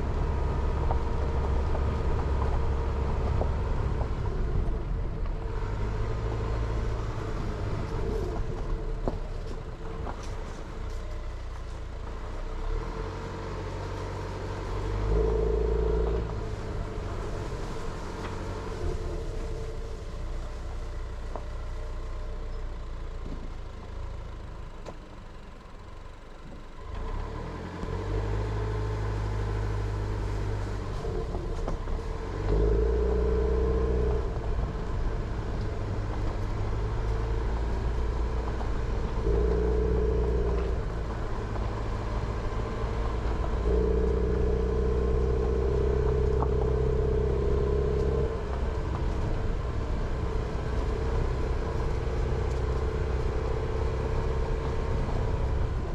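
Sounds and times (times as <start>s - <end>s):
road rumble: 0.0s - 55.9s
car engine revving: 27.0s - 55.9s.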